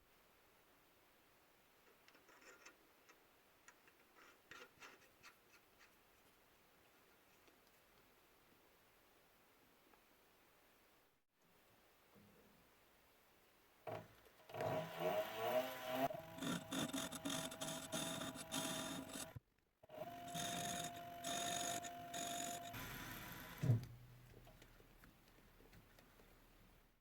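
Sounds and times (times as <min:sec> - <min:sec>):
metal lathe cutting: 0:14.9 - 0:19.4, 0:20.0 - 0:23.6
thump: 0:23.6 - 0:24.1.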